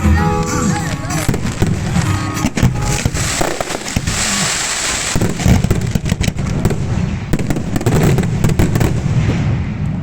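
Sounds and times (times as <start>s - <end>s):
fireworks popping and crackling: 0.0s - 10.0s
hissing burst: 2.7s - 5.7s.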